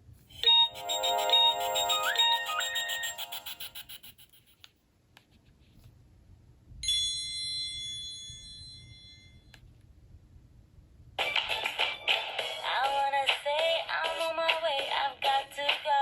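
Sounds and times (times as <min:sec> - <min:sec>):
bell-like chord of high tones: 0:00.4 - 0:03.8
phone ringtone tune: 0:00.4 - 0:04.0.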